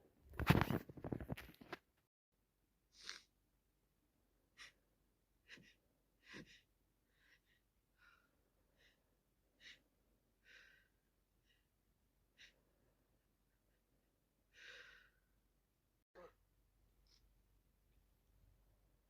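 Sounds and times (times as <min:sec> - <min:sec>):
person breathing faintly: 0:05.4 - 0:11.7, 0:14.5 - 0:15.3.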